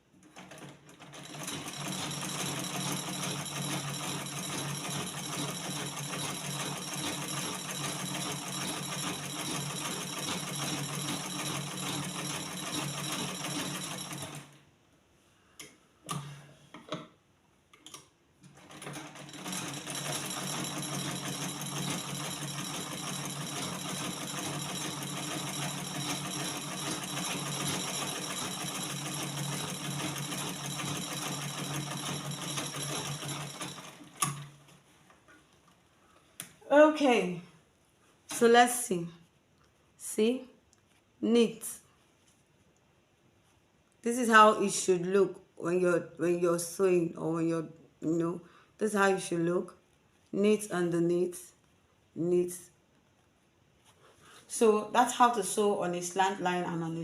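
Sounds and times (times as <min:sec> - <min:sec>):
sewing machine stitching: 0:00.2 - 0:14.5, 0:18.4 - 0:34.5.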